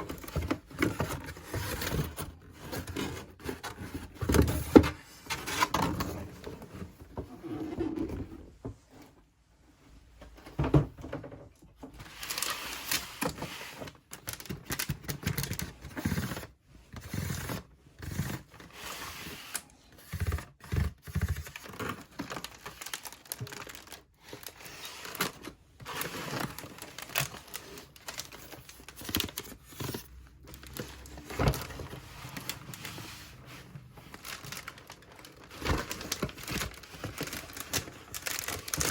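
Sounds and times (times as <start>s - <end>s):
packaging crinkling and tearing: 14.1s - 15.7s, 21.4s - 38.9s.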